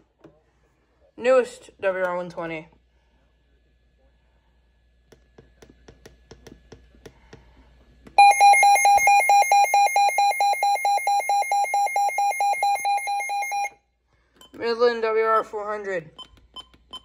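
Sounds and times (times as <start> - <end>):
rapid pulsing electronic beep: 8.2 - 13.7.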